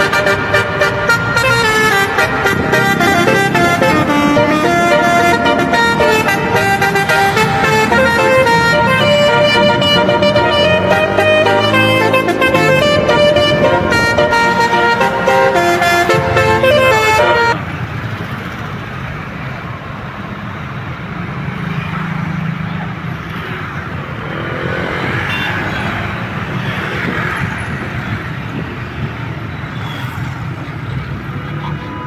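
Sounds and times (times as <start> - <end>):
multi-tone air horn melody: 0.0 - 17.6
bus engine hum: 0.0 - 29.7
vehicles passing: 0.0 - 32.0.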